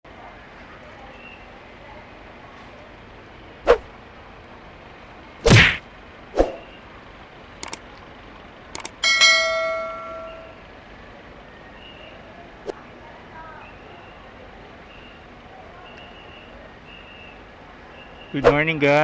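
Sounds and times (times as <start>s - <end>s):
clicks: 7.6s - 8.1s, 8.7s - 9.0s
hard object ringing ding: 9.0s - 10.6s.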